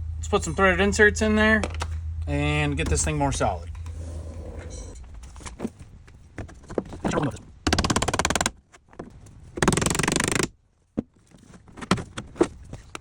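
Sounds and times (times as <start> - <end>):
knocks and handling clatter: 2.8 - 9.7, 10.9 - 13.0
power tool rattling burst: 9.6 - 10.5.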